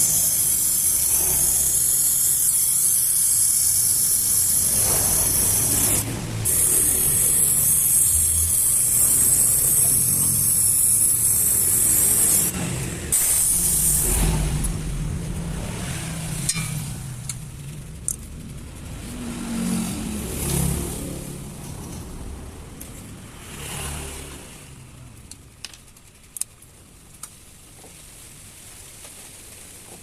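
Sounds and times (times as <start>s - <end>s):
compressed gas hissing through tubing: 0.0s - 14.8s
low rumble: 12.3s - 22.7s.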